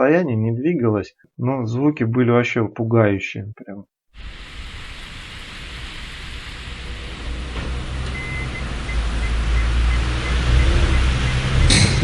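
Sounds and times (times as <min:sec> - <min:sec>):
car engine humming and rumbling: 0:04.7 - 0:12.0.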